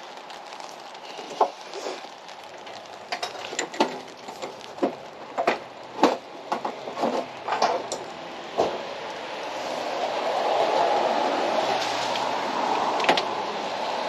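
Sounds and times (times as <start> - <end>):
tools clicking and clanking: 5.4 - 8.7.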